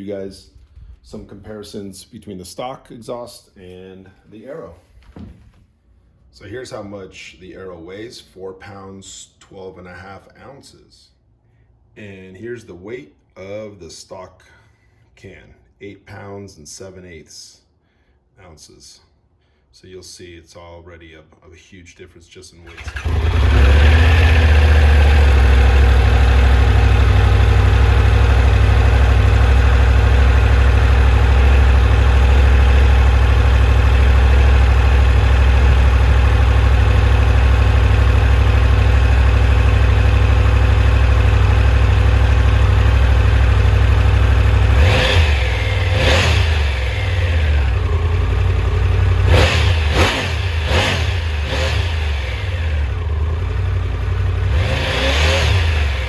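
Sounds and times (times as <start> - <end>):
motorcycle engine idling and revving: 22.7 - 56.0.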